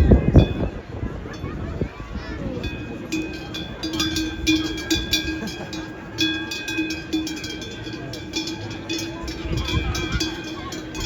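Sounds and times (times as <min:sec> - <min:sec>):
cow bells clanging: 0:02.4 - 0:11.0.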